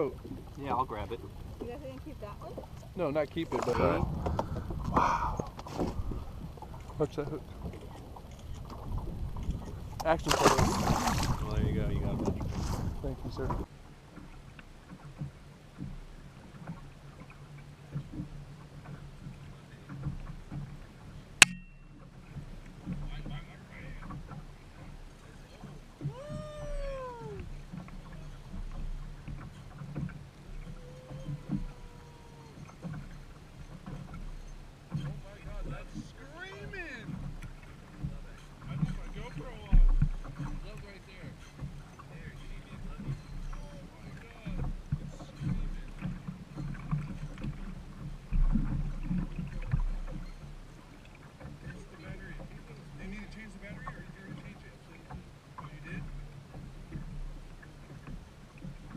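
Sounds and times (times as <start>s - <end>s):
boat low rumble: 0.0s - 58.9s
drawn-out animal calls: 30.6s - 33.5s.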